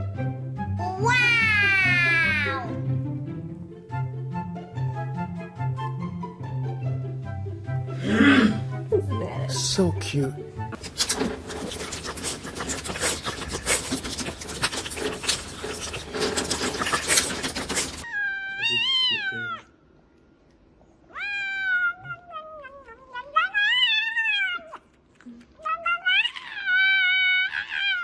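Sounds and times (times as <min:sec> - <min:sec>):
cat meowing: 0:00.9 - 0:02.7, 0:18.0 - 0:19.7, 0:21.1 - 0:24.8, 0:25.6 - 0:28.0
loud crackling rustling noise: 0:10.8 - 0:18.1.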